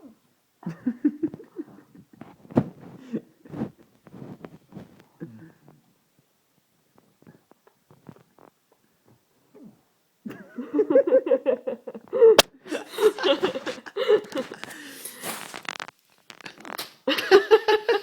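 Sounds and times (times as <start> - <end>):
hearty laughter: 0.6 - 2.2, 10.3 - 14.6, 17.1 - 18.0
breathy gasping laughter: 10.3 - 15.2
sharp crack: 12.4 - 12.6.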